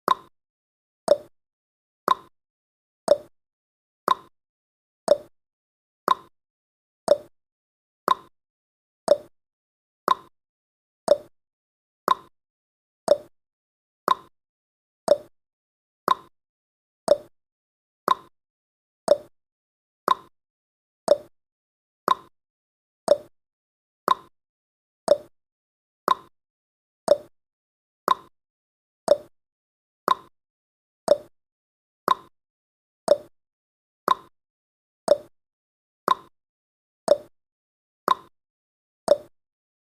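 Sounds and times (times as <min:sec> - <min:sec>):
clock-like timer ticking: 0:00.1 - 0:00.3, 0:01.1 - 0:01.3, 0:02.1 - 0:02.3, 0:03.1 - 0:03.3, 0:04.1 - 0:04.3, 0:05.1 - 0:05.3, 0:06.1 - 0:06.3, 0:07.1 - 0:07.3, 0:08.1 - 0:08.3, 0:09.1 - 0:09.3, 0:10.1 - 0:10.3, 0:11.1 - 0:11.3, 0:12.1 - 0:12.3, 0:13.1 - 0:13.3, 0:14.1 - 0:14.3, 0:15.1 - 0:15.3, 0:16.1 - 0:16.3, 0:17.1 - 0:17.3, 0:18.1 - 0:18.3, 0:19.1 - 0:19.3, 0:20.1 - 0:20.3, 0:21.1 - 0:21.3, 0:22.1 - 0:22.3, 0:23.1 - 0:23.3, 0:24.1 - 0:24.3, 0:25.1 - 0:25.3, 0:26.1 - 0:26.3, 0:27.1 - 0:27.3, 0:28.1 - 0:28.3, 0:29.1 - 0:29.3, 0:30.1 - 0:30.3, 0:31.1 - 0:31.3, 0:32.1 - 0:32.3, 0:33.1 - 0:33.3, 0:34.1 - 0:34.3, 0:35.1 - 0:35.3, 0:36.1 - 0:36.3, 0:37.1 - 0:37.3, 0:38.1 - 0:38.3, 0:39.1 - 0:39.3.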